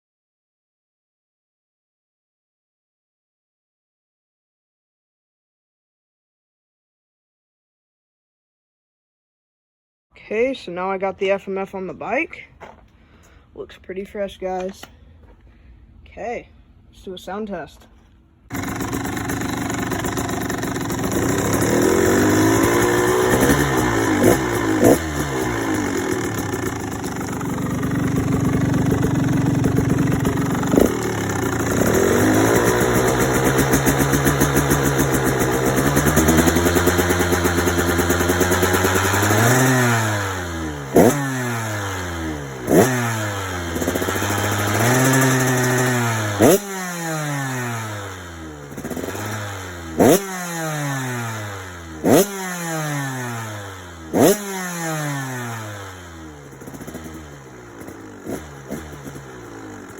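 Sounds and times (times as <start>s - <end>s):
dirt bike engine revving: 18.5s - 59.9s
exhaust crack: 18.5s - 59.9s.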